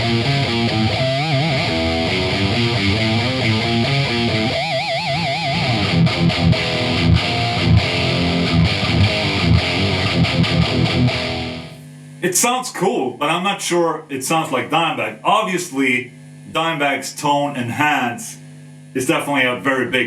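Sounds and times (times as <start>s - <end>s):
distorted electric guitar riffing: 0.0s - 11.8s.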